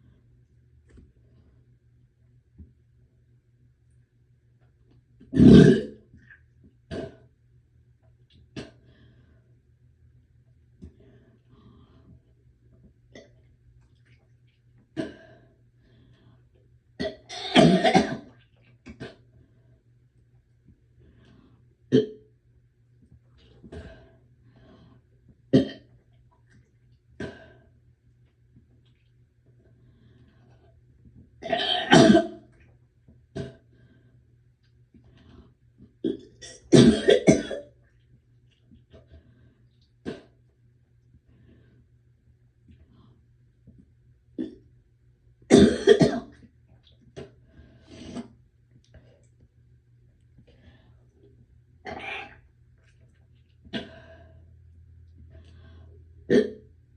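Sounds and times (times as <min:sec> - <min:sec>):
woman gagging and coughing: 0:31.4 - 0:32.3, 0:36.7 - 0:37.6, 0:45.5 - 0:46.3.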